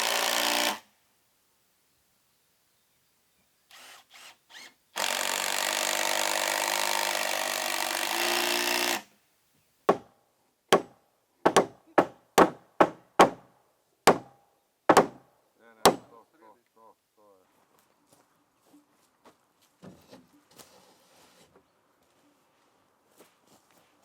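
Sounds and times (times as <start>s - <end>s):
power tool running on wood: 3.7s - 9.0s
sharp knocks on wood: 9.9s - 10.1s, 10.7s - 13.5s, 14.1s - 15.2s, 15.8s - 16.1s
faint scrapes: 19.9s - 24.0s.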